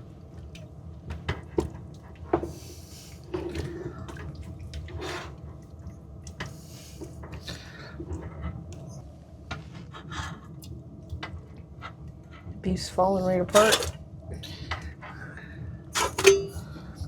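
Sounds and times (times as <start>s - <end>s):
steady low hum: 0.0s - 17.0s
utensil scraping in a pot: 16.0s - 16.6s.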